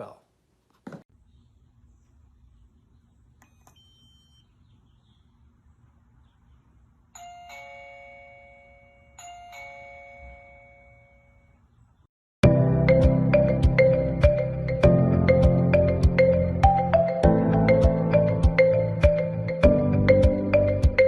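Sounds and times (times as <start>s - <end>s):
faint electronic beeps: 3.4s - 4.6s
doorbell ding-dong chime: 7.2s - 11.5s.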